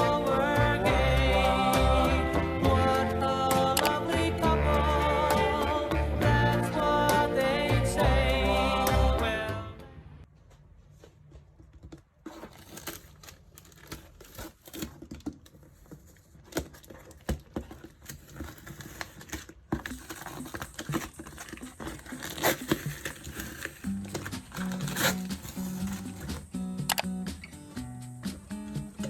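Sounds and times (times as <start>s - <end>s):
wrap crinkling: 12.0s - 26.5s
paper tearing: 12.2s - 15.1s, 15.8s - 26.5s.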